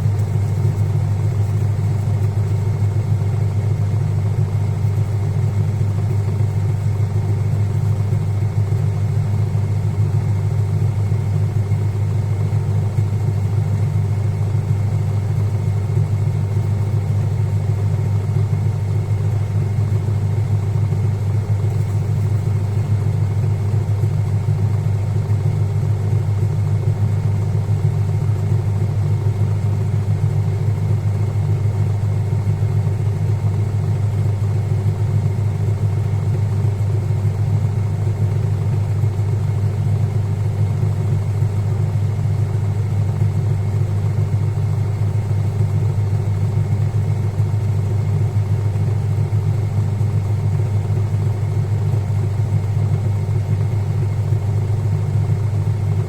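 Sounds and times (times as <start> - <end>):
washing machine spinning hum: 0.0 - 56.0.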